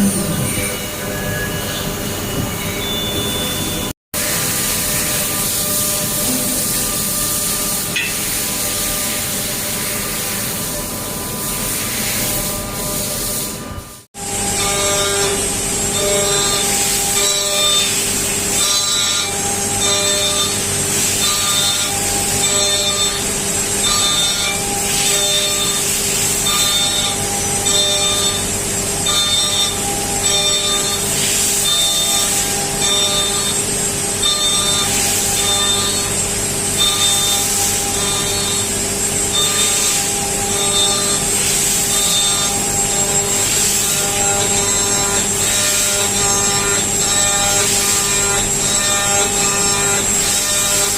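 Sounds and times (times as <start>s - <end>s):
grinding noise with tones: 0.0s - 3.9s
machine whirring cutting metal: 0.0s - 50.9s.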